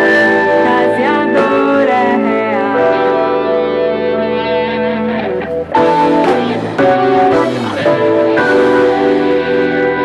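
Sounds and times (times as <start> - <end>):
guitar music: 0.0 - 10.0.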